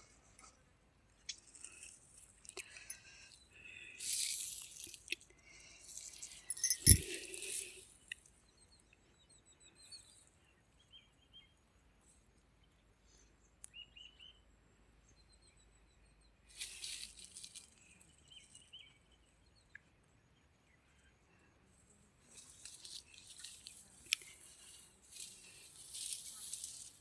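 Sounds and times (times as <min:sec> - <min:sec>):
brief rustle: 0:06.5 - 0:07.5, 0:22.4 - 0:27.0.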